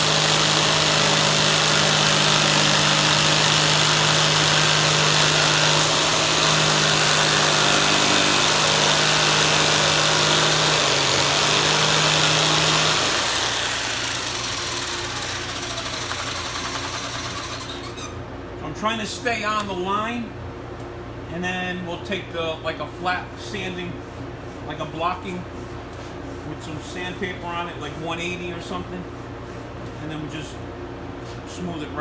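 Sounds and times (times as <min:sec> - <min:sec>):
power tool cutting plastic: 0:00.0 - 0:18.2.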